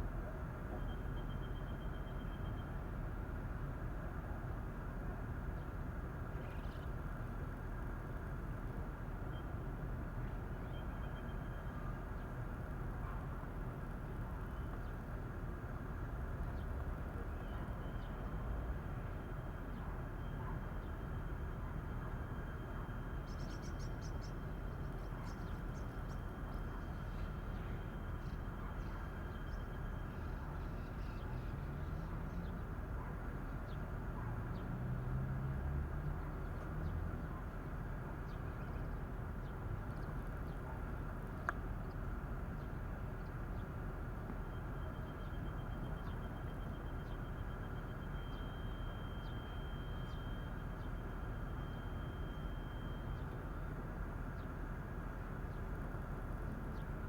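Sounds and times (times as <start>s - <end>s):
outdoor background rumble: 0.0s - 57.0s.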